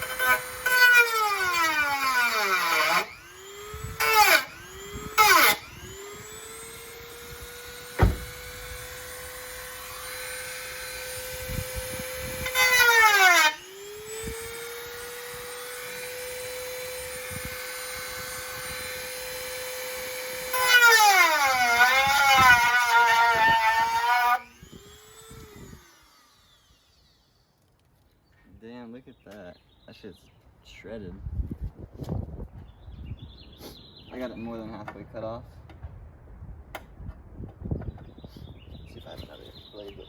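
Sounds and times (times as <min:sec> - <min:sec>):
electric tool cutting sheet metal: 0:00.0 - 0:27.5.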